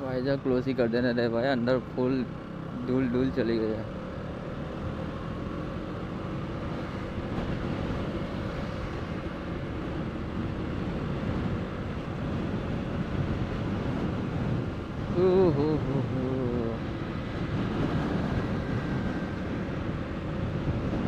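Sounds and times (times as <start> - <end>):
wind noise on microphone: 6.5 - 21.0.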